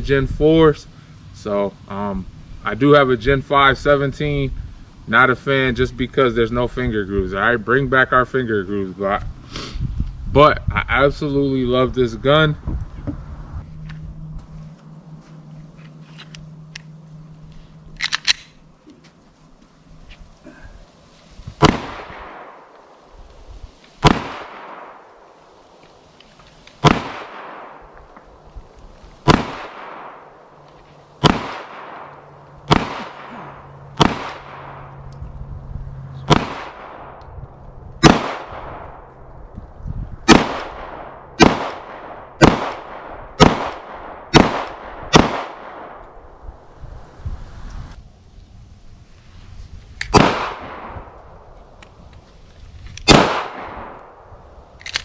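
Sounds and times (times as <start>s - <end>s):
pistol shots echoing: 21.6s - 22.7s, 24.0s - 25.2s, 26.8s - 27.9s, 29.2s - 30.4s, 31.2s - 35.0s, 36.3s - 37.2s, 38.0s - 39.0s, 40.3s - 46.0s, 50.1s - 51.1s, 53.0s - 54.3s.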